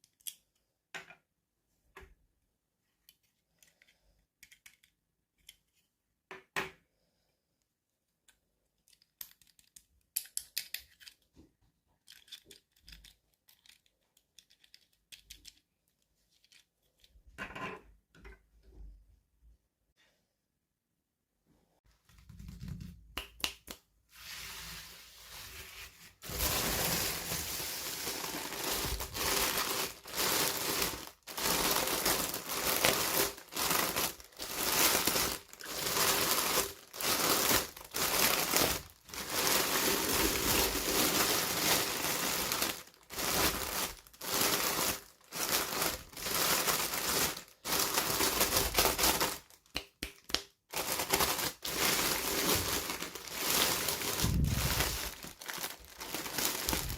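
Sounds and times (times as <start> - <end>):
packaging crinkling and tearing: 26.2 - 49.7, 50.7 - 56.9.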